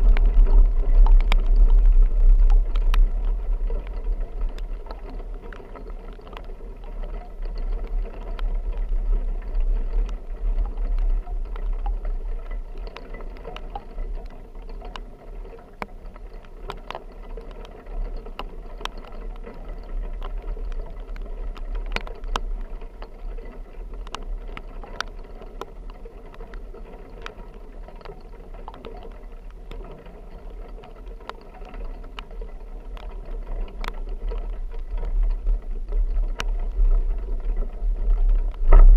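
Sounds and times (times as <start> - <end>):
vehicle driving low rumble: 0.0 - 14.8
raindrops striking vehicle: 0.0 - 38.9.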